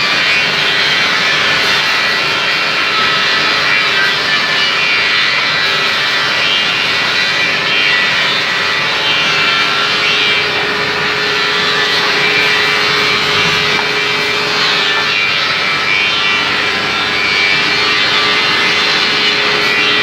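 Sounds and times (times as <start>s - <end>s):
constant hum: 0.0s - 20.0s
floor sanding machine hissing: 0.0s - 20.0s.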